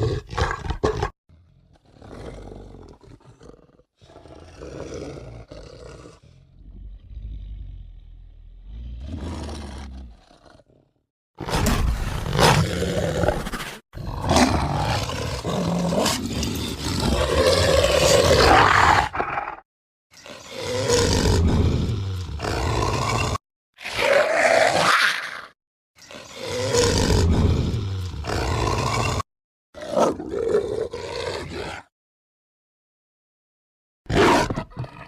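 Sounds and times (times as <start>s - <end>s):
deep growling roars: 1.3s - 10.8s.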